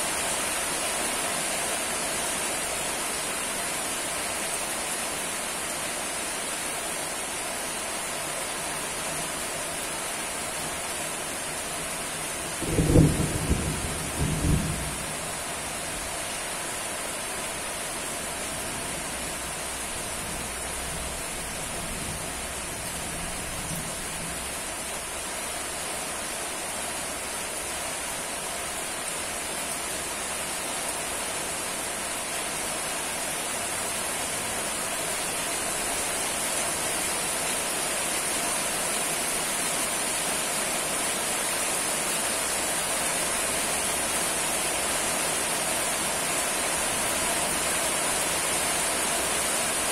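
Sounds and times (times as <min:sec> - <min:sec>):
steady rain falling: 0:00.0 - 0:49.9
low thunder rumble: 0:12.6 - 0:15.5.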